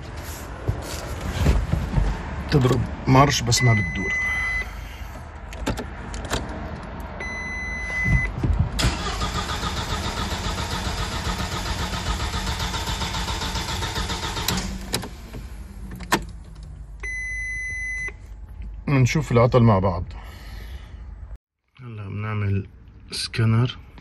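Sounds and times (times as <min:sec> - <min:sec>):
steady beep: 0:03.6 - 0:04.7
car starter cranking engine: 0:08.8 - 0:16.5.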